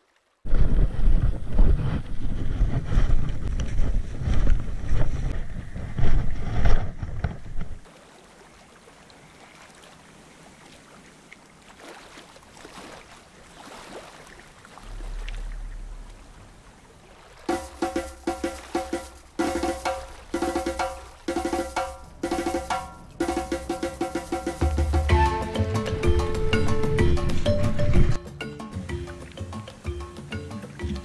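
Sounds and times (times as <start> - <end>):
wind buffeting microphone: 0.4 - 7.9
low hum: 14.8 - 28.2.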